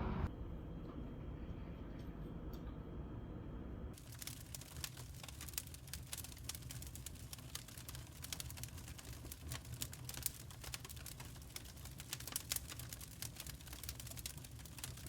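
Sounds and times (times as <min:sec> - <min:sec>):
fire low rumble: 0:03.9 - 0:15.0
firewood crackling and popping: 0:03.9 - 0:15.0.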